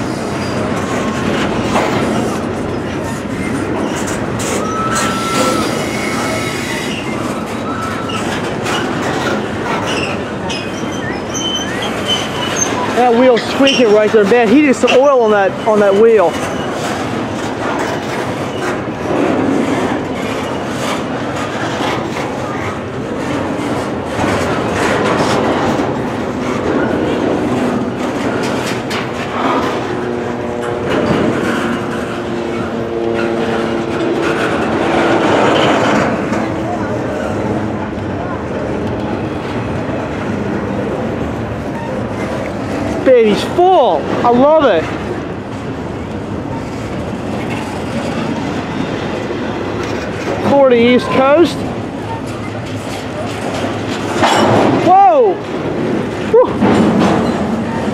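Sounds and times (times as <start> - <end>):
train wheels rumbling on rail: 0.0 - 57.9
high-pitched wheel squeals: 3.0 - 8.8, 9.8 - 14.0.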